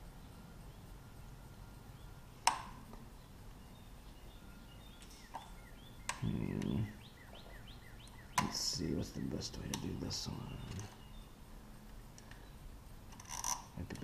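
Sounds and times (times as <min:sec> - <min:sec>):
bird chirping: 0:00.0 - 0:14.0
low rattling call: 0:00.0 - 0:14.0
sharp clicks: 0:02.4 - 0:03.0, 0:05.0 - 0:06.8, 0:08.0 - 0:08.7.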